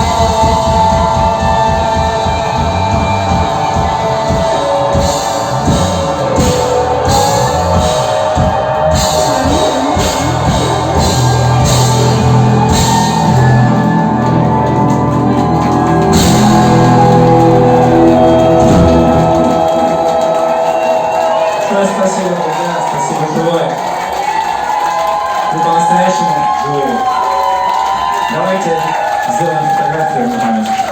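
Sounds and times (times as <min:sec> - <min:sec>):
live rock band playing: 0:00.0 - 0:23.1.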